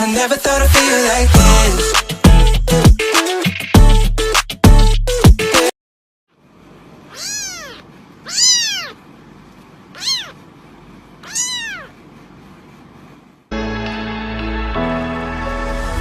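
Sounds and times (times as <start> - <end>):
music: 0.0 - 5.7, 13.5 - 16.0
kitten meowing: 7.1 - 9.0, 9.9 - 10.4, 11.2 - 12.0.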